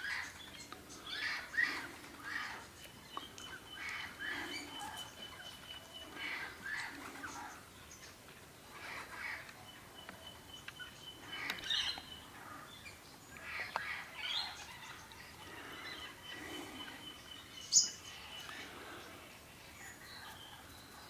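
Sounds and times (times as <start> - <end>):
wild birds chirping: 0.0 - 21.0.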